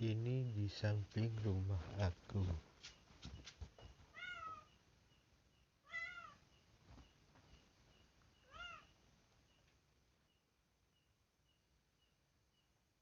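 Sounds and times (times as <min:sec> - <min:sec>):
cat meowing: 0:04.1 - 0:04.7, 0:05.8 - 0:06.4, 0:08.4 - 0:08.9.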